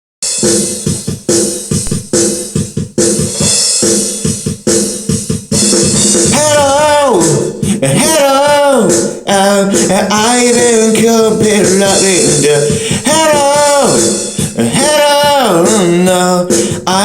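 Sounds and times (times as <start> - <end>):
drum kit beat: 0.2 - 17.0
person singing: 6.2 - 17.0.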